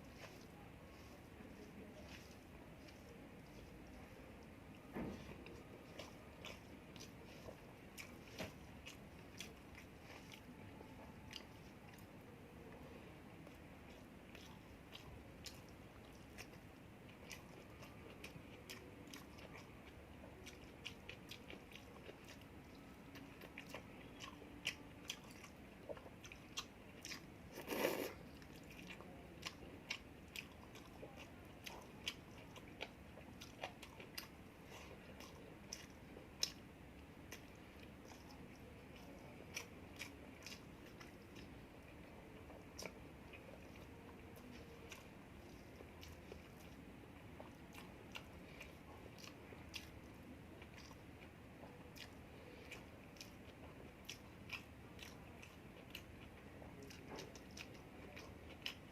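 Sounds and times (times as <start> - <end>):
person chewing and biting: 4.8 - 12.1, 13.5 - 36.6, 37.3 - 46.8, 47.4 - 50.0, 50.6 - 51.0, 51.6 - 58.8.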